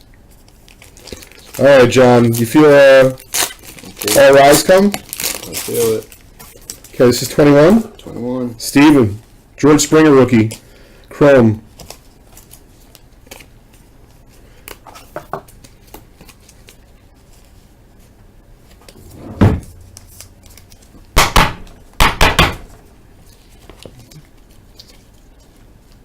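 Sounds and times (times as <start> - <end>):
cards clicking and rustling: 14.6 - 17.6, 19.8 - 21.1.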